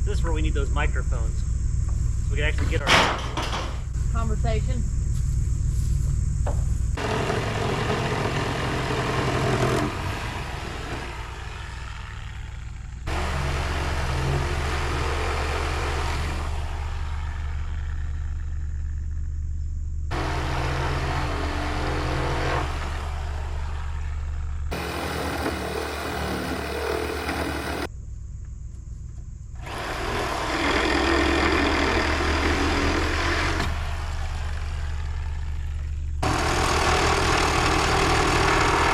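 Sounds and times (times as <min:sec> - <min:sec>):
low engine hum: 0:03.8 - 0:38.9
reciprocating saw cutting wood: 0:07.0 - 0:18.4, 0:20.1 - 0:27.9, 0:29.6 - 0:35.6, 0:36.2 - 0:38.9.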